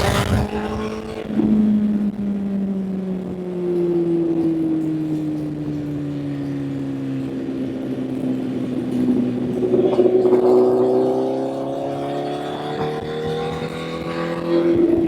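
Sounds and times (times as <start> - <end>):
motorcycle engine revving: 0.0 - 2.3, 8.4 - 15.0
road and wind rush: 0.0 - 15.0.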